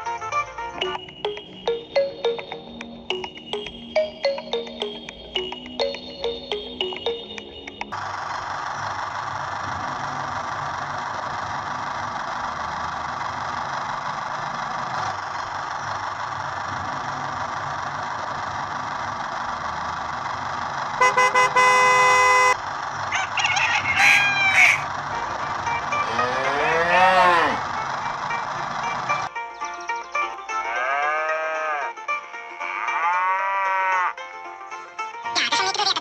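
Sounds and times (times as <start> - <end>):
horn honking: 21.0 - 22.6, 23.9 - 24.9, 25.8 - 27.9.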